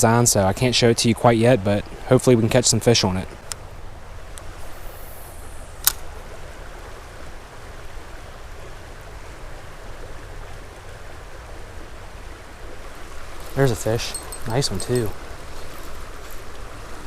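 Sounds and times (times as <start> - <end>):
creek water rushing: 6.0 - 17.0.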